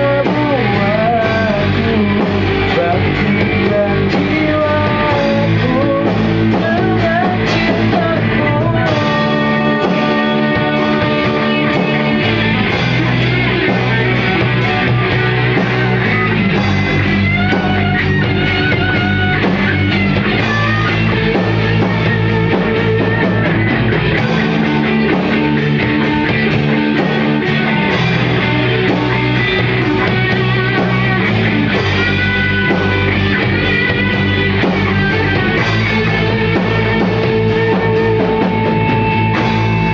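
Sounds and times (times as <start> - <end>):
electric guitar: 0.0 - 39.9
person singing: 0.0 - 39.9
rock band playing: 0.0 - 39.9.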